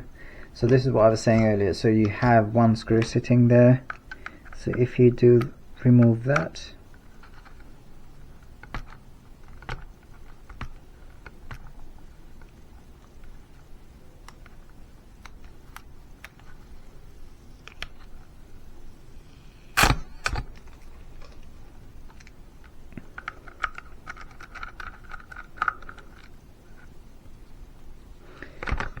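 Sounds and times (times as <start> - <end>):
small plastic clicks: 19.3 - 27.0.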